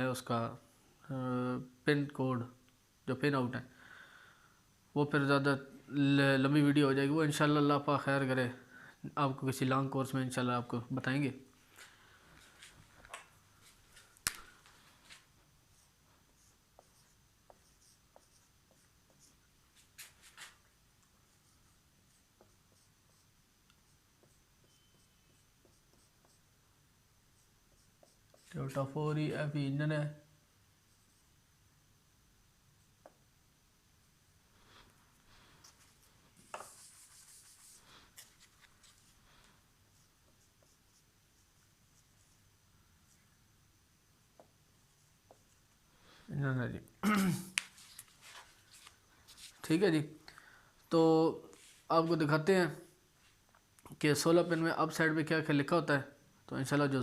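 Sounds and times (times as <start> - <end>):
rubbing and rustling: 17.8 - 20.7, 35.4 - 42.4, 47.6 - 49.7.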